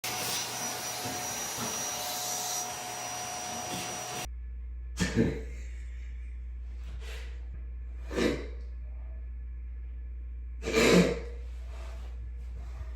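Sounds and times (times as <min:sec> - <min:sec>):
low hum: 0:02.6 - 0:12.9.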